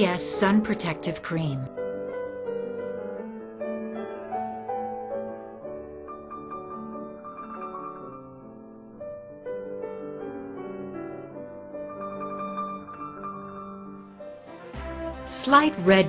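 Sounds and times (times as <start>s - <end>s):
soft piano melody: 0.0s - 16.0s.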